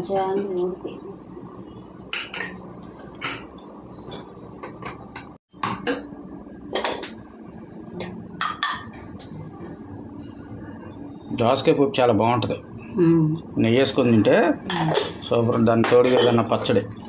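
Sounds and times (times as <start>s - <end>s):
utensils knocking against a pot: 2.1s - 6.1s, 8.0s - 9.0s, 15.8s - 16.7s.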